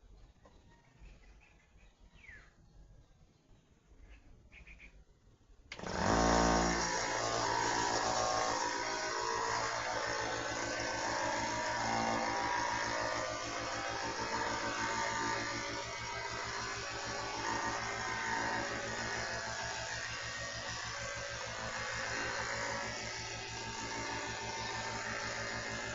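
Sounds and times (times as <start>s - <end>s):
air compressor running: 5.7s - 25.9s.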